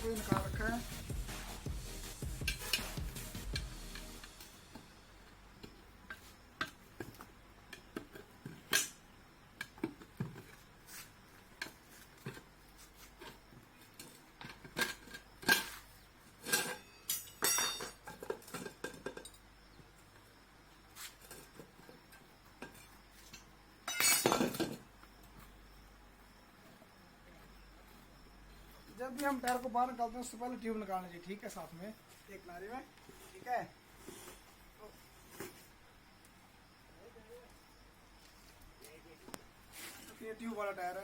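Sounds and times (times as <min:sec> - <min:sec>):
metallic clinks and knocks: 0:16.4 - 0:19.5.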